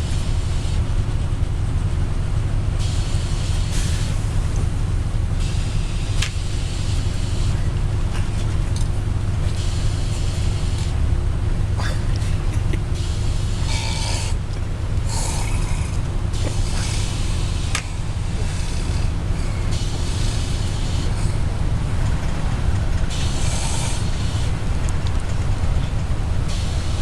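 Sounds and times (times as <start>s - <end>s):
bus engine drone: 0.0s - 27.0s
man snoring: 13.1s - 21.6s, 23.1s - 24.6s.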